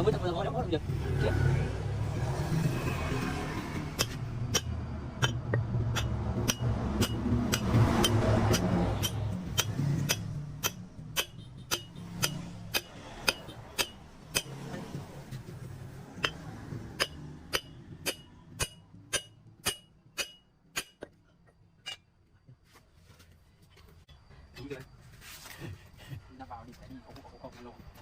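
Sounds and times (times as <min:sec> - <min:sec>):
hammer blows on steel rim: 0:04.0 - 0:14.6.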